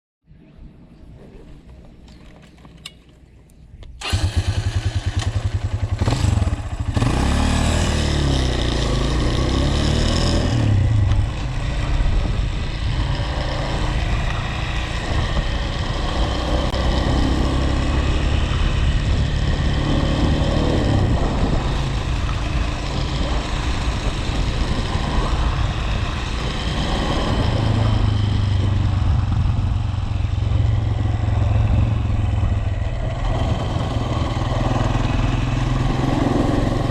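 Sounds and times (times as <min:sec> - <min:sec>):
engine starting and revving: 0:04.0 - 0:10.8.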